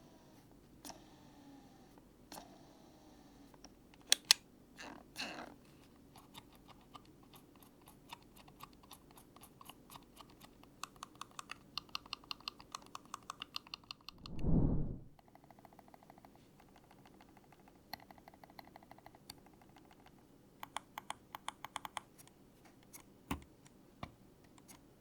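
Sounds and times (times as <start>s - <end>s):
soft muted mouse clicks: 9.6s - 14.3s, 15.7s - 24.8s
sharp mouse clicks: 9.6s - 14.4s.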